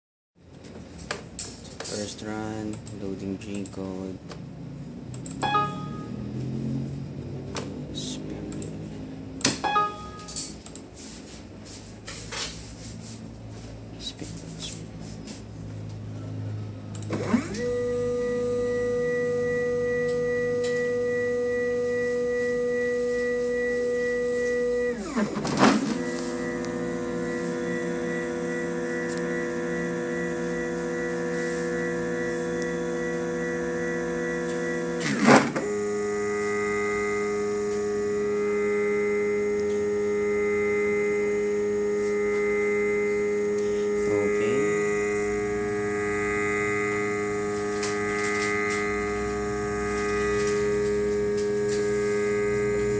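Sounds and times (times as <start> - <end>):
stepper motors whining: 16.9 - 52.9.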